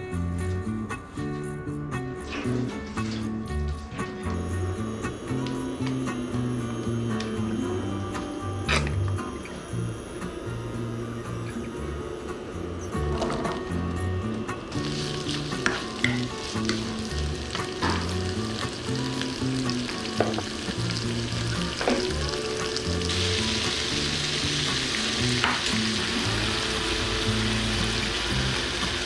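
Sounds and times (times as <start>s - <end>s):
background music: 0.0s - 29.0s
food sizzling in a pan: 0.0s - 29.0s
utensil clicking against pan: 12.9s - 26.1s.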